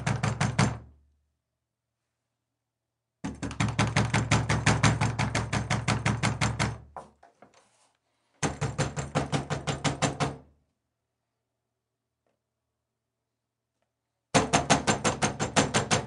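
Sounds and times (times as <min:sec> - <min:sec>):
rapid pounding on a door: 0:00.0 - 0:01.0, 0:03.2 - 0:07.2, 0:08.4 - 0:10.5, 0:14.3 - 0:16.0.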